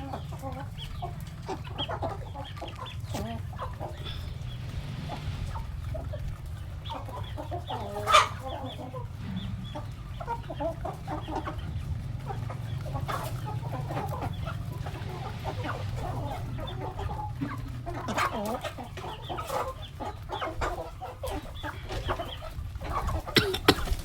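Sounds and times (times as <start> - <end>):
chickens clucking: 0.0 - 24.0
steady low hum: 3.8 - 6.9.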